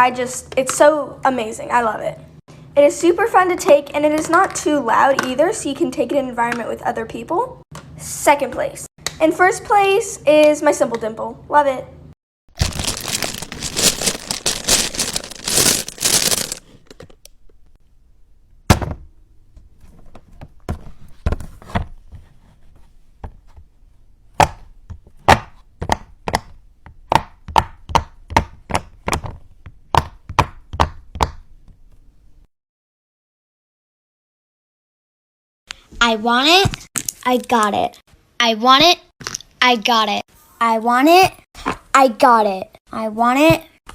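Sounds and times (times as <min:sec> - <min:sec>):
rustling handling noise: 0:12.6 - 0:17.8.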